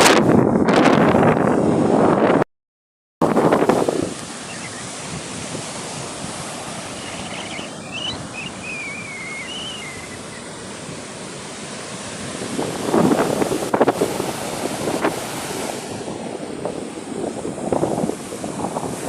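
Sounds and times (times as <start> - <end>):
ocean waves washing: 0.0 - 2.4, 3.2 - 19.0
faint high chirps: 4.4 - 5.1, 6.9 - 10.5.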